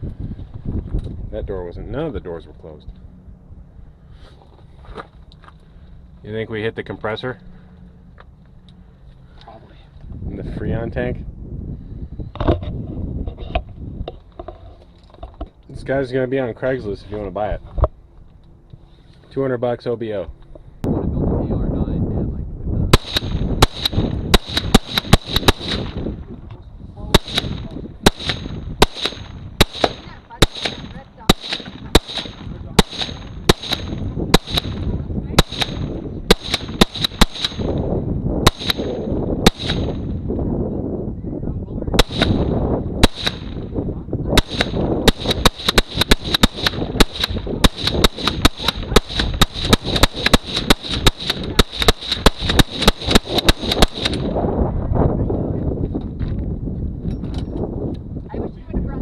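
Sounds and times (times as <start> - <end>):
gunshots: 22.9 - 26.1, 27.1 - 37.8, 38.4 - 40.1, 42.0 - 43.7, 44.4 - 54.4.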